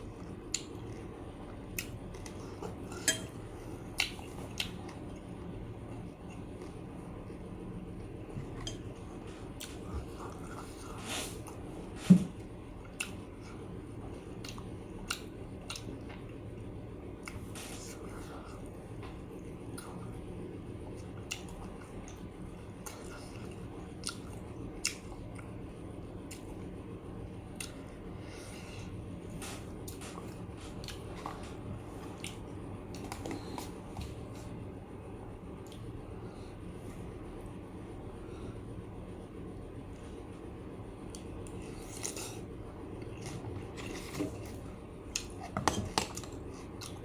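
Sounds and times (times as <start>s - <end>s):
person chewing food: 0.0s - 6.8s, 8.4s - 12.0s, 14.4s - 18.7s, 28.7s - 34.6s, 41.1s - 47.0s.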